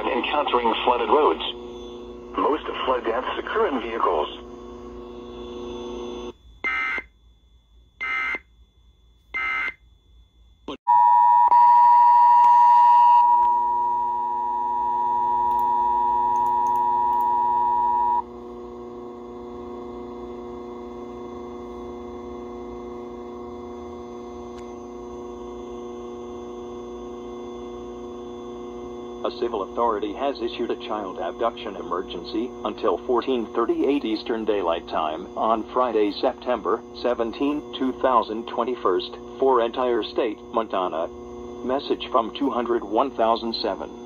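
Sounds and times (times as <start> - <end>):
mains hum: 0.0 - 44.0
click: 15.5 - 15.7, 16.3 - 17.3, 24.5 - 24.7.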